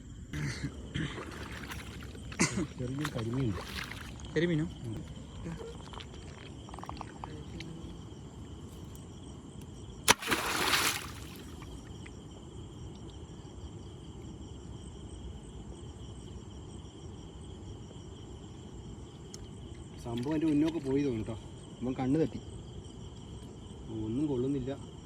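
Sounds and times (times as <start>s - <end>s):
crickets chirping: 0.0s - 25.0s
blade striking water with splash: 1.2s - 2.2s, 2.9s - 4.2s, 10.1s - 11.8s.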